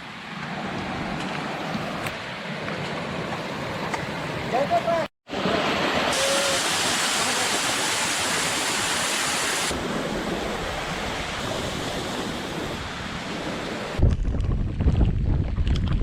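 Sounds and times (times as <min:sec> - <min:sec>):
rushing water: 0:00.0 - 0:14.1
wind buffeting microphone: 0:09.8 - 0:16.0.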